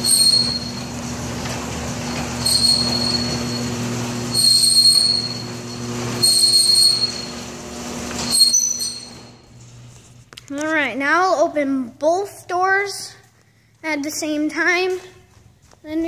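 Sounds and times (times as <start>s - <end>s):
high squeal: 0.0s - 1.0s, 2.1s - 9.5s
garage door opener humming: 0.0s - 10.2s.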